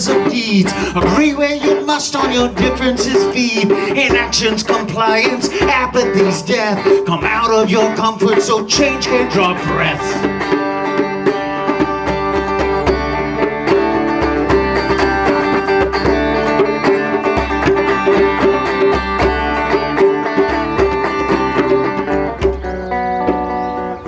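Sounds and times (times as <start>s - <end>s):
live band plucked strings: 0.0s - 24.0s.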